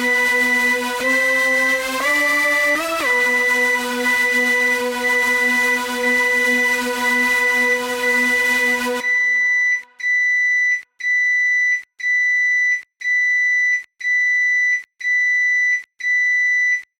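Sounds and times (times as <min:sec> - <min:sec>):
held musical chord: 0:00.0 - 0:09.4.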